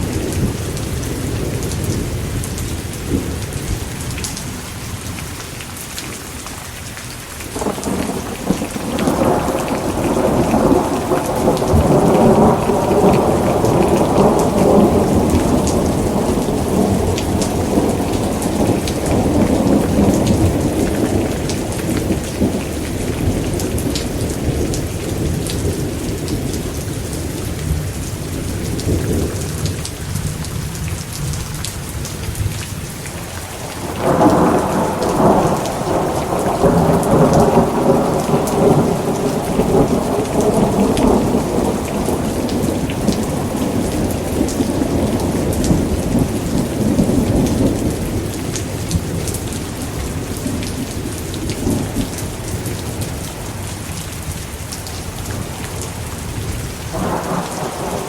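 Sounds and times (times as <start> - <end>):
heavy rain: 0.0 - 58.0
thunder rumbling: 7.6 - 30.4, 33.5 - 53.3, 56.0 - 58.0.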